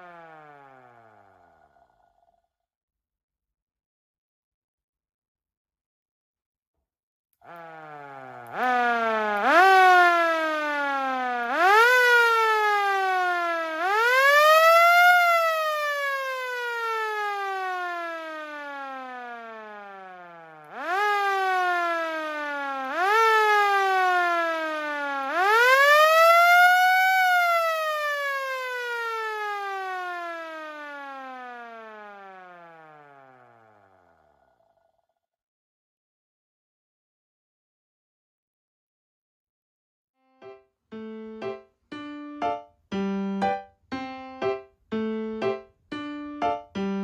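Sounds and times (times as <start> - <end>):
mechanical motor siren wailing: 0.0 - 2.3, 7.4 - 35.0.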